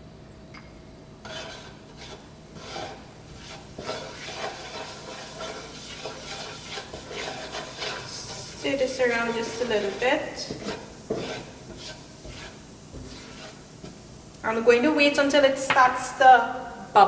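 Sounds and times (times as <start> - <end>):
spoon scraping a pan: 1.2 - 14.4
spices sizzling in oil: 1.2 - 17.0.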